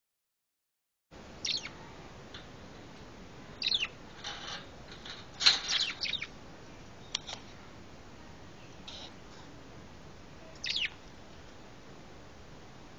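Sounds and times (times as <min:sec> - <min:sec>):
bird chirping: 0:01.4 - 0:01.9, 0:03.5 - 0:04.0, 0:05.4 - 0:07.3, 0:10.4 - 0:11.0.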